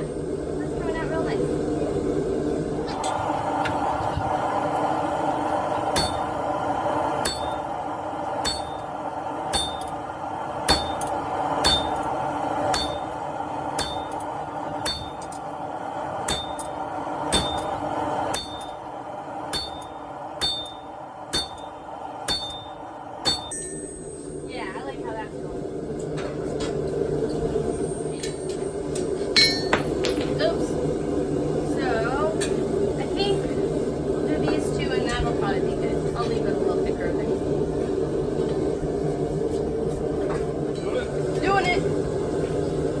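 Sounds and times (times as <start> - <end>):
steady hum: 0.0 - 43.0
hammer blows on steel on anvil: 6.0 - 6.6, 7.2 - 13.2, 13.8 - 15.4, 16.3 - 24.0.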